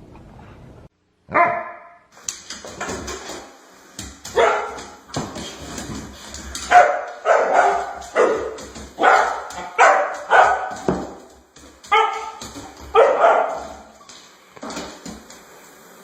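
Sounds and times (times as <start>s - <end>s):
dog barking: 1.3s - 2.1s, 4.3s - 5.0s, 6.7s - 11.2s, 11.9s - 13.9s.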